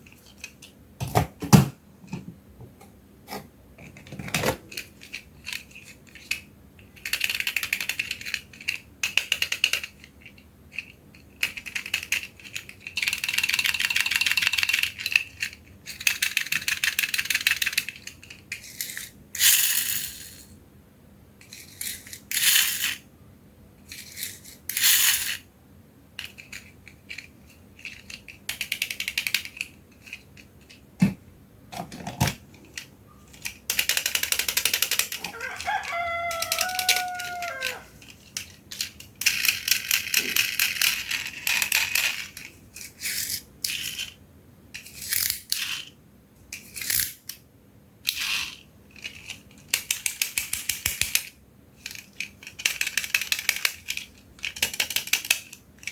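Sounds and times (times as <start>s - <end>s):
plastic toy cars rattling down slide: 32.7s - 44.2s, 44.8s - 45.9s, 48.1s - 55.9s
rooster crowing: 35.2s - 38.0s.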